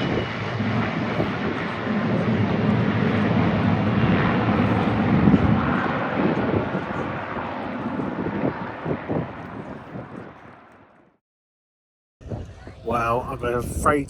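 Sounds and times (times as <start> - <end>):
aircraft flying past: 0.0 - 11.1.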